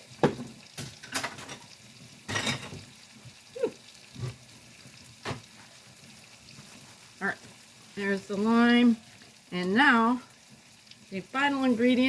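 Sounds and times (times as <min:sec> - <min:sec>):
food sizzling: 0:00.0 - 0:12.0.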